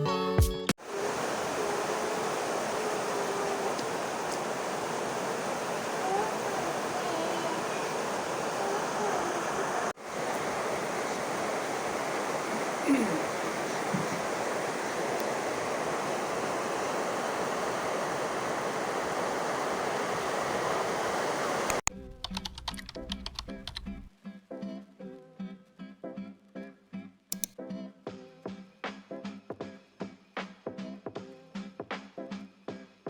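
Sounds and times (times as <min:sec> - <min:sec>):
ocean surf washing on shore: 0:00.8 - 0:21.8.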